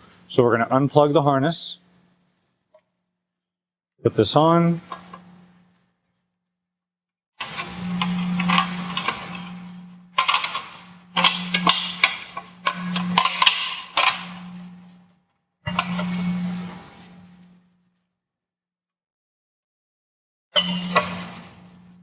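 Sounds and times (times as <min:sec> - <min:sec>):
metal parts clicking and scraping: 0:07.4 - 0:14.6, 0:20.6 - 0:21.6
steady low hum: 0:07.4 - 0:15.1.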